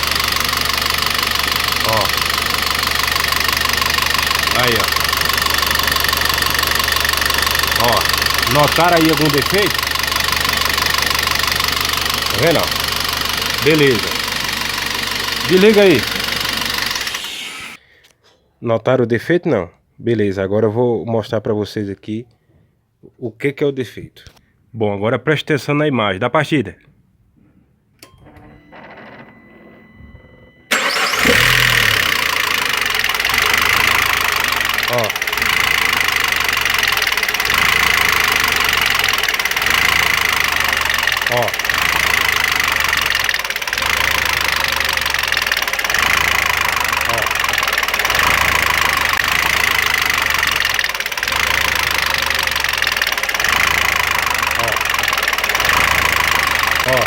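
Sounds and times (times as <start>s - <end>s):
car engine starting and revving: 0.0s - 17.8s, 30.7s - 57.0s
fast even ticking: 1.0s - 17.5s, 31.8s - 57.0s.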